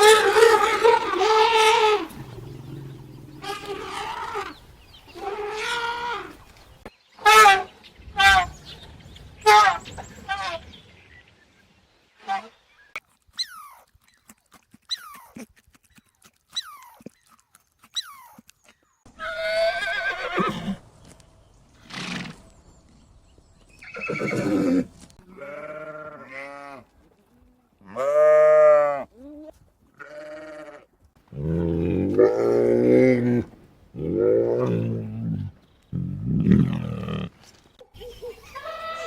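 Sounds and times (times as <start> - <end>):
sheep bleating: 25.3 - 26.8, 30.0 - 30.9.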